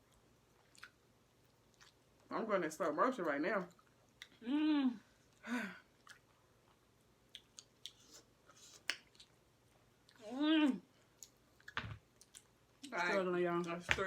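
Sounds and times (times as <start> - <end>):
person chewing: 0.0 - 2.3, 5.9 - 10.3, 10.9 - 12.6.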